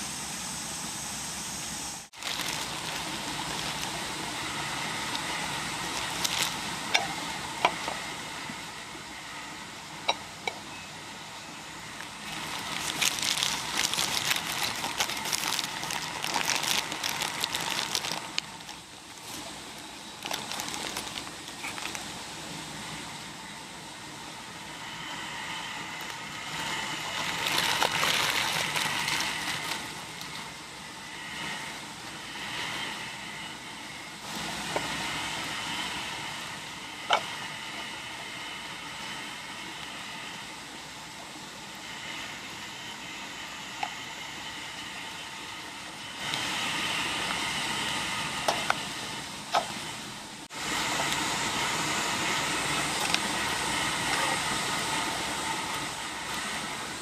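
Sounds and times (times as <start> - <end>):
steady hiss: 0.0 - 57.0
fire crackling and popping: 2.1 - 7.0, 12.0 - 22.2, 25.9 - 30.5.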